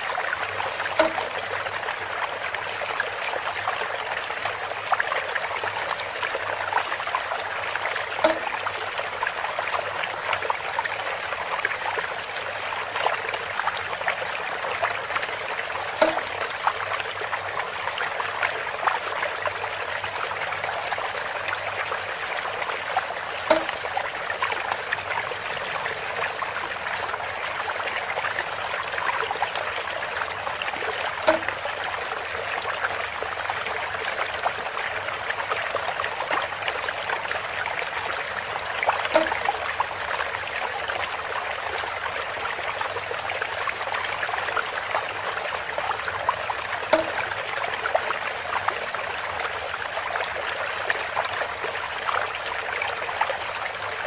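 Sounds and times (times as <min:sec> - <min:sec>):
water trickling: 0:00.0 - 0:54.0
pitched plink: 0:01.0 - 0:01.4, 0:08.2 - 0:08.7, 0:16.0 - 0:16.4, 0:23.5 - 0:24.0, 0:31.3 - 0:31.6, 0:39.1 - 0:39.6, 0:46.9 - 0:47.3.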